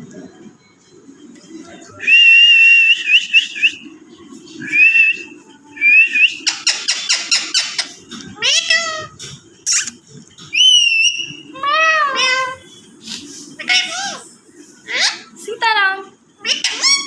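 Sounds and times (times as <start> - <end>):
parrot squawk: 6.6 - 9.1, 10.6 - 12.6, 13.6 - 15.3, 16.4 - 17.0
parrot whistling: 10.5 - 12.6, 16.5 - 17.0
parrot chirps: 16.4 - 17.0.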